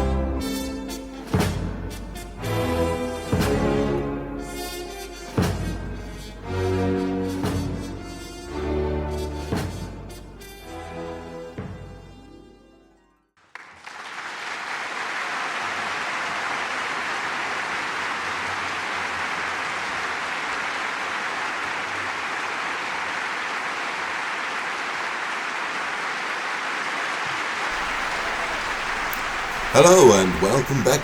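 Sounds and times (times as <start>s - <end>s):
studio audience applauding: 13.4s - 31.0s.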